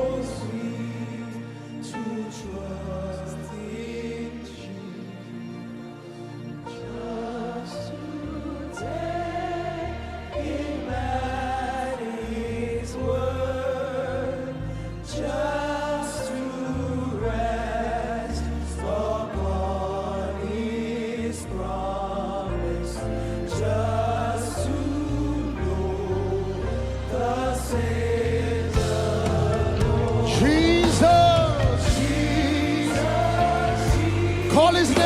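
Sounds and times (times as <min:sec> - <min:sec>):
voices singing held notes: 0:06.8 - 0:35.0
band with deep bass: 0:26.2 - 0:35.0.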